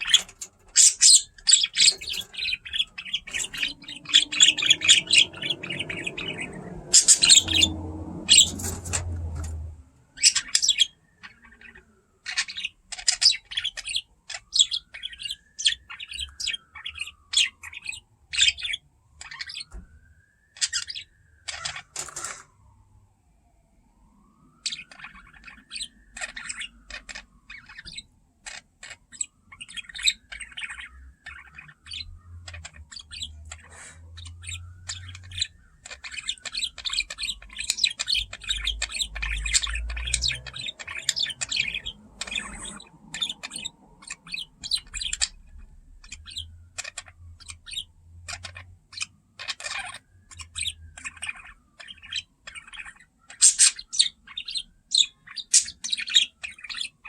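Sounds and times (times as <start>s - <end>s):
budgerigars chirping and chattering: 0.0s - 19.8s, 20.6s - 22.4s, 24.6s - 57.0s.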